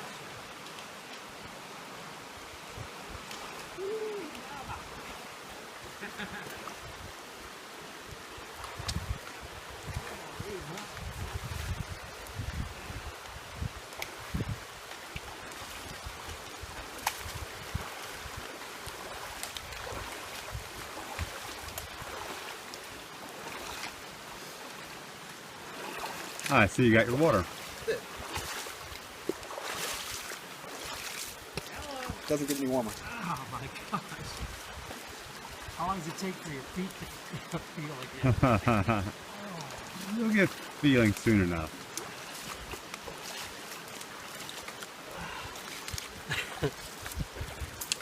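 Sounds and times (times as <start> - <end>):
creek rushing: 0.0 - 48.0
low animal call: 3.8 - 4.8.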